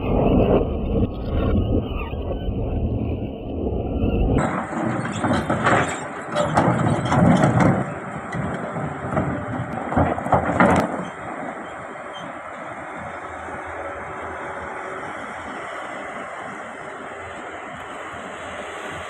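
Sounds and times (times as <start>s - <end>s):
clanks and knocks: 4.4s - 12.4s
excavator engine under load: 4.4s - 19.0s.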